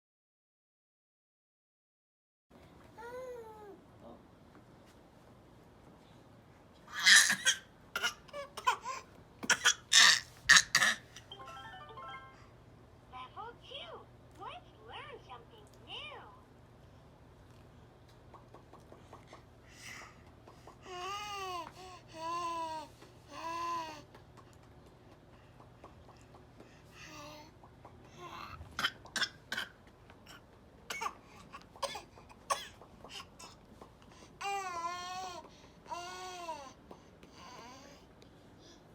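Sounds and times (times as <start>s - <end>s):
baby fake coughing: 6.9s - 11.2s, 28.4s - 33.6s.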